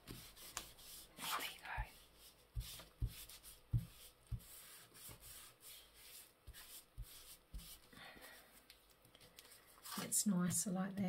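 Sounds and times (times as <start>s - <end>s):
paper rubbing and rustling: 0.0s - 7.9s, 9.4s - 10.2s.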